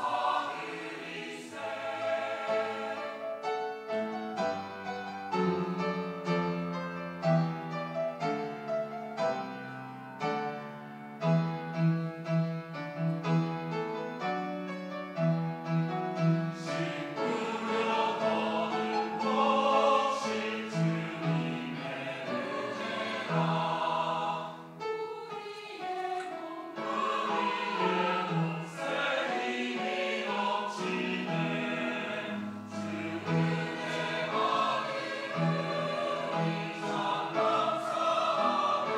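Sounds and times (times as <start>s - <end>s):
church choir singing: 0.0s - 7.5s, 15.6s - 38.9s
piano accompaniment: 0.0s - 38.9s.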